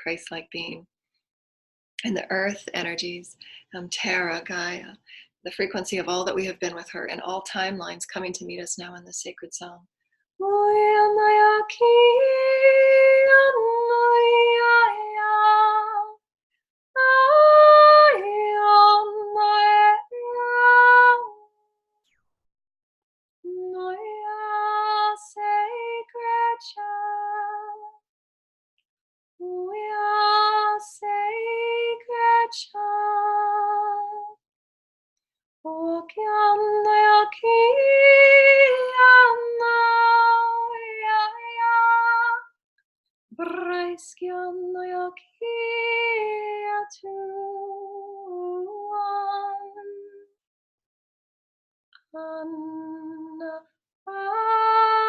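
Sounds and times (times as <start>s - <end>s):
woman singing wordless tones: 35.7s - 42.5s, 43.4s - 50.3s.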